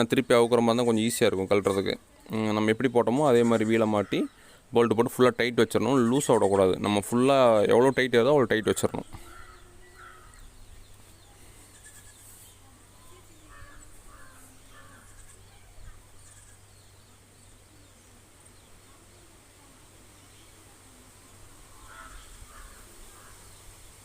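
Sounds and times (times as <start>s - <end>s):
crows cawing: 9.2s - 10.5s, 13.5s - 15.3s, 21.7s - 23.5s.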